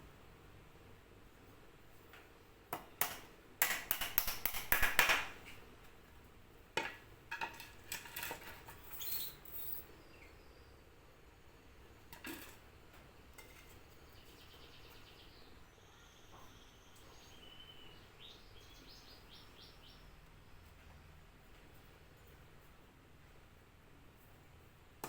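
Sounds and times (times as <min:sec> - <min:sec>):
bird cage parts knocking and clicking: 0:02.8 - 0:05.4.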